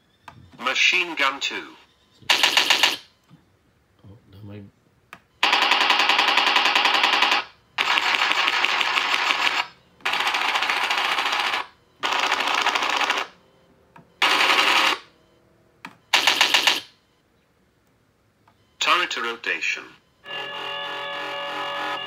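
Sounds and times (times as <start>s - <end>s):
machine-gun fire from small speaker: 2.3s - 3.0s, 16.1s - 16.9s.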